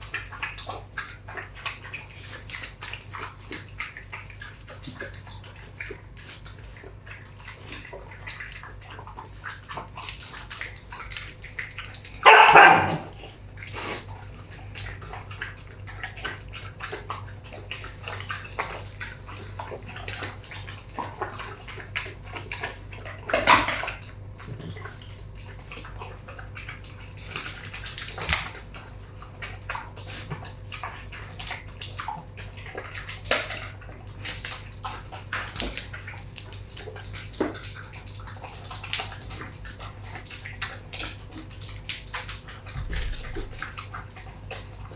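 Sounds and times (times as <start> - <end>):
dog barking: 12.2 - 13.3
small clicks and rustles: 32.6 - 44.9.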